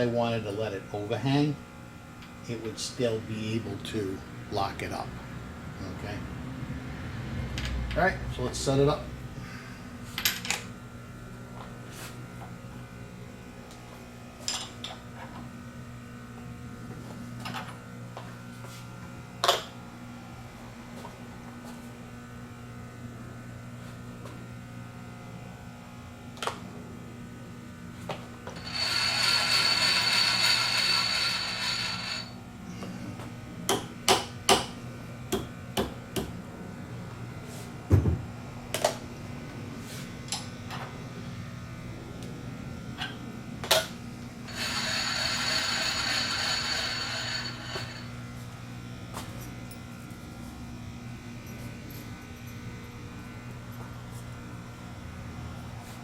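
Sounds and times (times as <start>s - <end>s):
shop hum: 0.0s - 56.0s
thin high whine: 28.4s - 33.1s, 44.2s - 50.2s
rattling ratchet mechanism: 28.6s - 32.3s, 44.5s - 48.1s.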